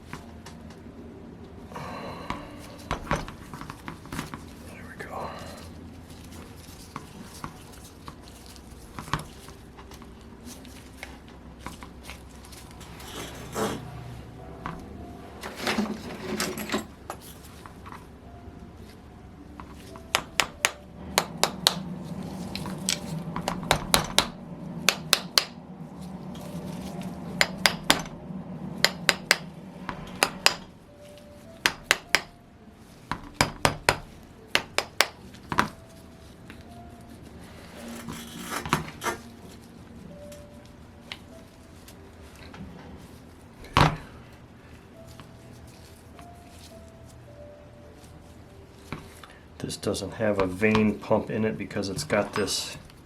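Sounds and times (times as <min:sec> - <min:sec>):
low hum: 0:00.0 - 0:49.7
metal parts and tools clinking: 0:15.4 - 0:17.6.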